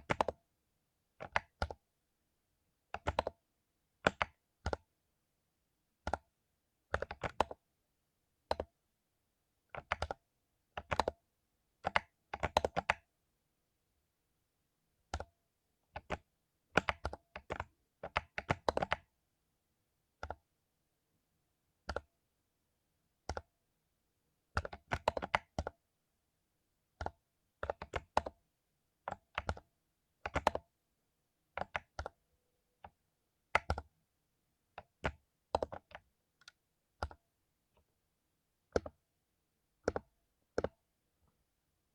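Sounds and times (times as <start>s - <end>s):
mechanical keyboard typing: 0.0s - 0.4s, 1.2s - 1.8s, 2.9s - 3.4s, 4.0s - 4.8s, 6.9s - 7.6s, 9.8s - 10.2s, 10.8s - 11.2s, 11.8s - 13.0s, 16.0s - 16.2s, 16.8s - 19.1s, 24.6s - 25.7s, 27.0s - 28.4s, 29.1s - 30.6s, 31.6s - 32.2s, 32.8s - 33.9s, 34.8s - 37.2s, 38.7s - 39.0s, 39.8s - 40.8s.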